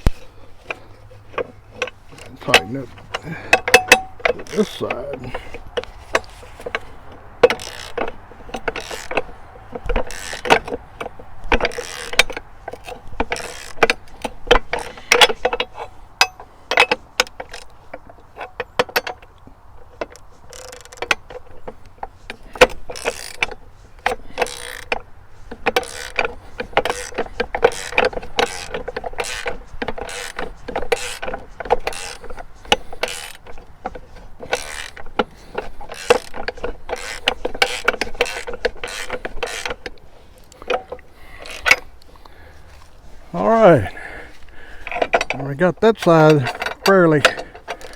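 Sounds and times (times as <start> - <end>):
wrench clicking on metal: 0.0 - 19.4, 20.0 - 42.4.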